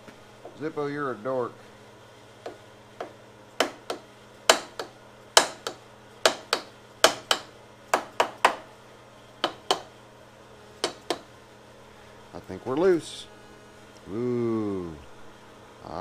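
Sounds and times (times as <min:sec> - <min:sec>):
sharp tool taps: 0:02.4 - 0:08.6, 0:09.4 - 0:09.9, 0:10.8 - 0:11.3.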